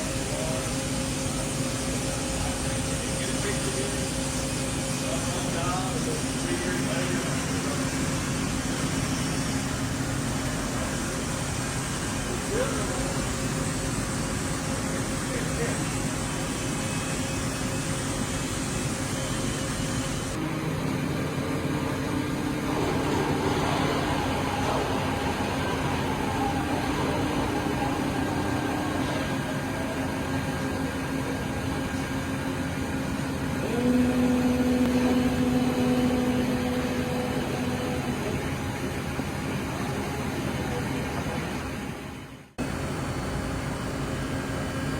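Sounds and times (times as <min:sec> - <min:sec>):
lathe machine hum: 0:00.0 - 0:44.9
motor whine: 0:01.3 - 0:41.8.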